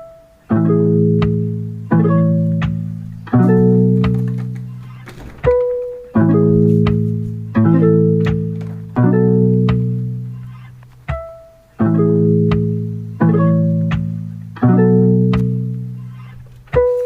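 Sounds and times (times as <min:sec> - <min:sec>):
plucked string chords: 0:00.0 - 0:17.0.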